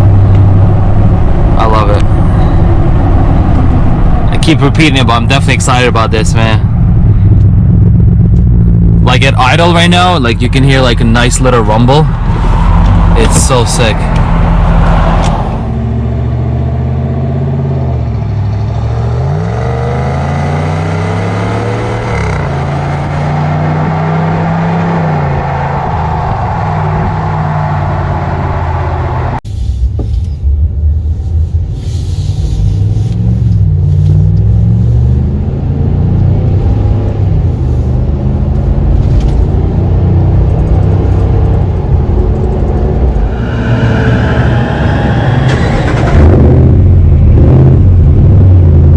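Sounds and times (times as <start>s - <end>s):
engine rumbling at low revs: 0.0s - 48.9s.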